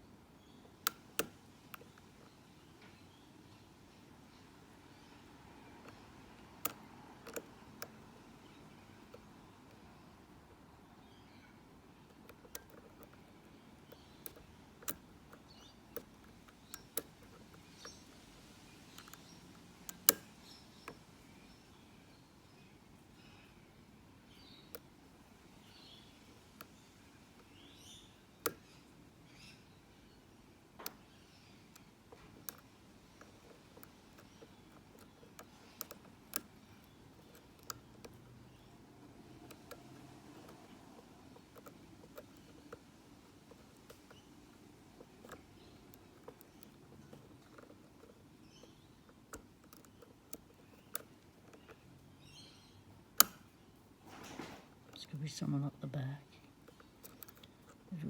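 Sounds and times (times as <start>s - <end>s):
lock pick clicking in padlock: 5.8s - 9.8s, 12.0s - 21.1s, 30.8s - 55.0s, 56.6s - 57.9s.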